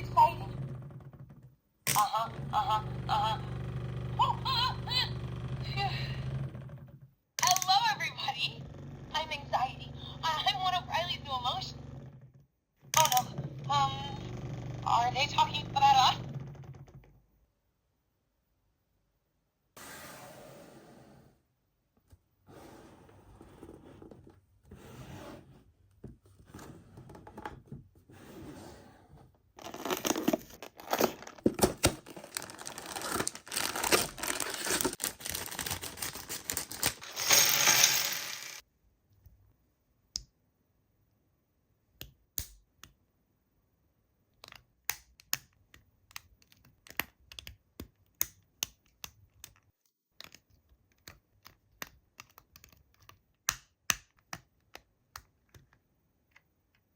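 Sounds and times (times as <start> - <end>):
packaging tearing and crinkling: 29.6 - 38.6.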